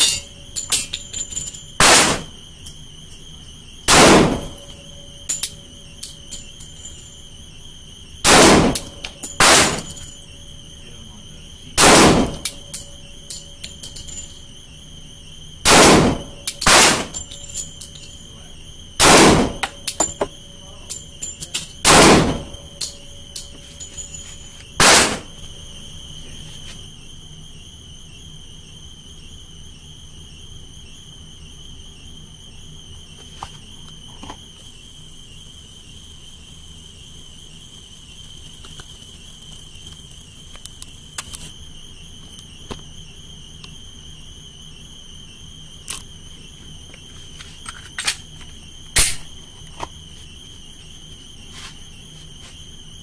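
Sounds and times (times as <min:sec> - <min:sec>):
steady high-pitched tone: 0:00.0 - 0:03.8, 0:04.4 - 0:15.4, 0:19.5 - 0:21.8
pistol shots: 0:01.8 - 0:02.3, 0:03.9 - 0:04.6, 0:08.2 - 0:10.0, 0:11.8 - 0:12.6, 0:15.6 - 0:17.2, 0:19.0 - 0:19.8, 0:21.8 - 0:22.6, 0:24.8 - 0:25.3.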